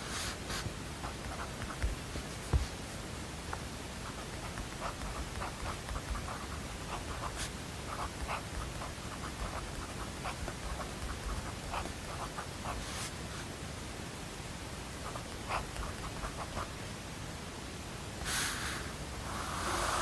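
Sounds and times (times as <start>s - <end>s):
steady hiss: 0.0s - 20.0s
pen scratching on paper: 0.2s - 2.7s, 4.0s - 13.2s, 15.0s - 16.7s.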